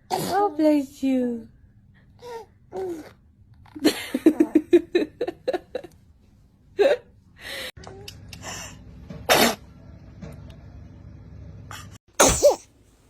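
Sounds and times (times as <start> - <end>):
baby breathy gasps: 12.2 - 12.6
baby sneezing: 12.2 - 12.6.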